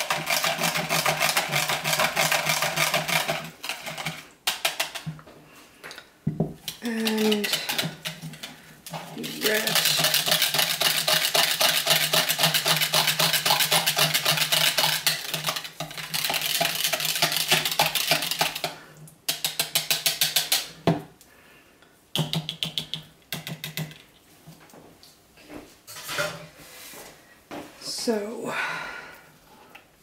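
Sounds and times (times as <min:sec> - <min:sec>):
whisk scraping container: 0:00.0 - 0:05.2, 0:06.6 - 0:20.8.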